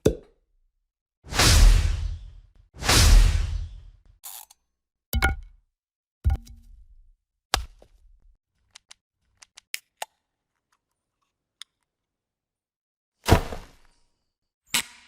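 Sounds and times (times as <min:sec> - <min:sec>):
sharp hit: 0:01.3 - 0:03.9.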